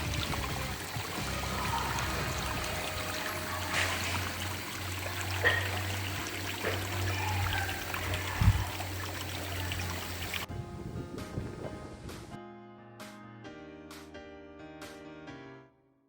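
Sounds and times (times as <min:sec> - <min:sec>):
waterfall rushing: 0:00.0 - 0:10.5.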